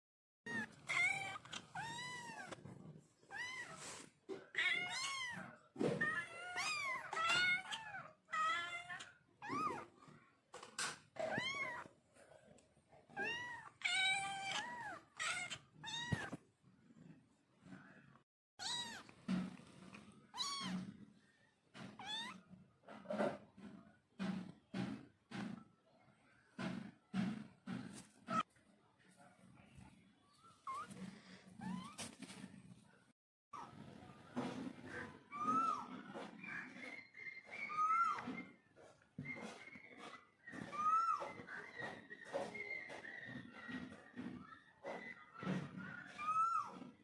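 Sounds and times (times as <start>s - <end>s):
cats meowing: 0.5s - 10.2s, 11.2s - 12.0s, 13.0s - 16.4s, 18.6s - 21.0s, 21.8s - 22.5s, 34.9s - 38.6s, 40.5s - 42.0s, 43.3s - 47.0s.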